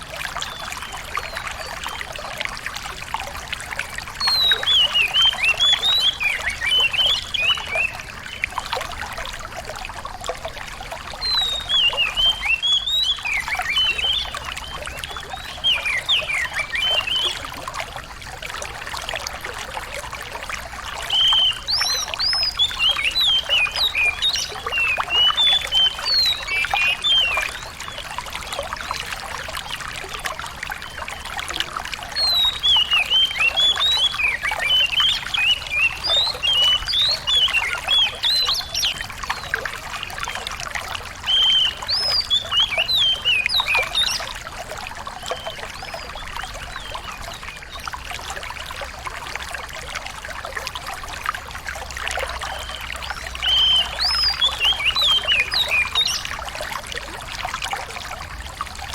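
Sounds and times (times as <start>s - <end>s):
water trickling: 0.0s - 58.9s
songbird chirping: 32.2s - 39.5s, 52.4s - 56.4s.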